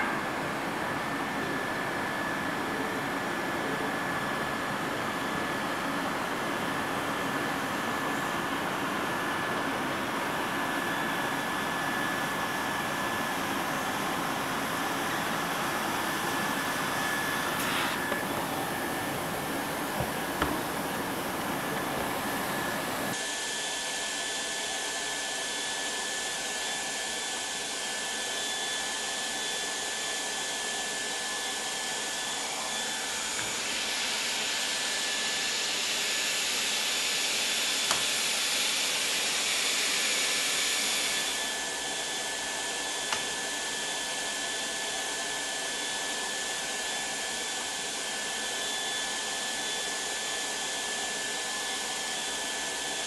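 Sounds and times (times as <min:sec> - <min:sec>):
hot-air welding blower hissing: 0:09.4 - 0:23.2.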